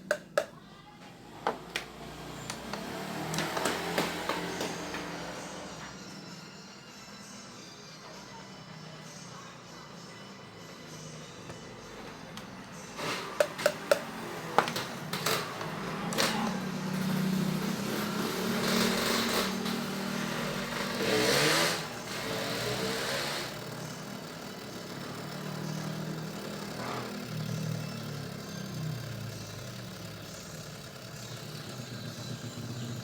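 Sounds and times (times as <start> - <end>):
disc drive motor humming: 13.0 - 32.7.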